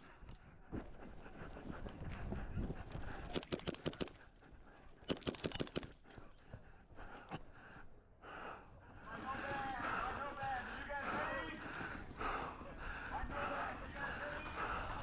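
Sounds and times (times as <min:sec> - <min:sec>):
airsoft gun firing bursts: 0:03.3 - 0:04.1, 0:05.1 - 0:05.9.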